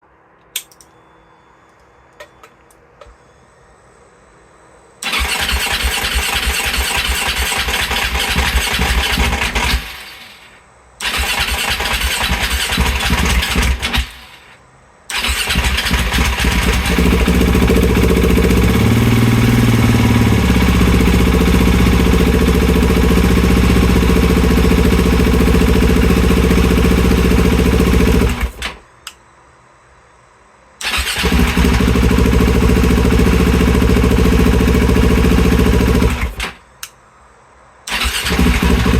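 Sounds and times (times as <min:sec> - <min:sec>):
engine cranking: 0:05.0 - 0:10.4, 0:11.0 - 0:14.3, 0:15.1 - 0:21.1, 0:37.9 - 0:38.9
motorcycle engine running: 0:05.6 - 0:09.9, 0:11.5 - 0:13.9, 0:15.5 - 0:28.6, 0:31.2 - 0:36.4, 0:38.2 - 0:38.9.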